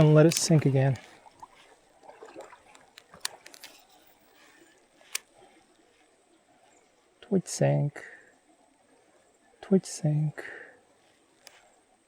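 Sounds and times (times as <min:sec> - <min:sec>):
faint sharp clicks: 0:11.4 - 0:11.7.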